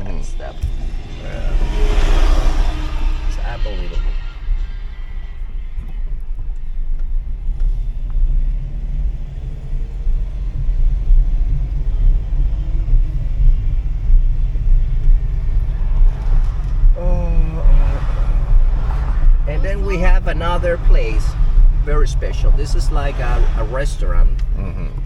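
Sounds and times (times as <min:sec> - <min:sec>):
car road and wind noise: 0:00.0 - 0:25.0
person speaking: 0:17.0 - 0:18.6, 0:19.4 - 0:25.0.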